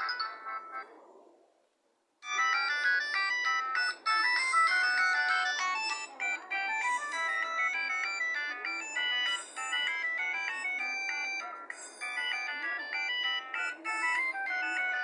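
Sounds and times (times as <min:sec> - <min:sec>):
polyphonic ringtone tune: 0:00.0 - 0:00.9, 0:02.2 - 0:15.0.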